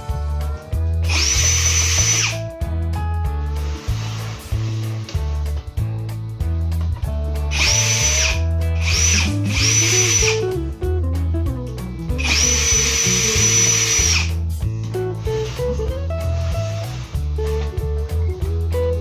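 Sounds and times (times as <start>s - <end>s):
background music with steady beat: 0.0s - 19.0s
power drill driving screws: 1.0s - 2.4s, 7.5s - 10.4s, 12.2s - 14.4s.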